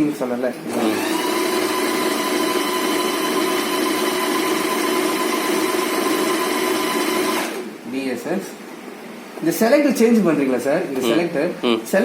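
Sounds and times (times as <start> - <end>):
electric sewing machine running: 0.7 - 7.7.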